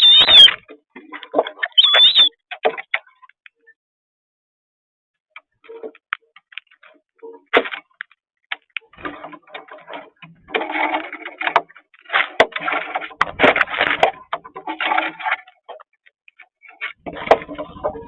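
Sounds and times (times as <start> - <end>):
birds chirping and clicking: 0.0 - 0.6, 1.2 - 3.6.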